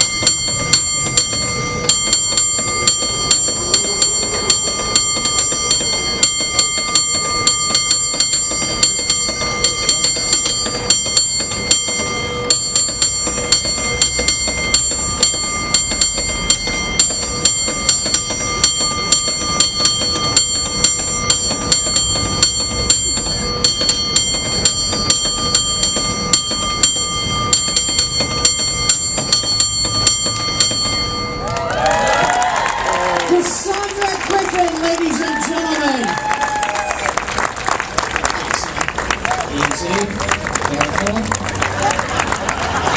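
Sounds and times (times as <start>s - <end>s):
cable car bell ringing rhythmically: 0.0s - 42.9s.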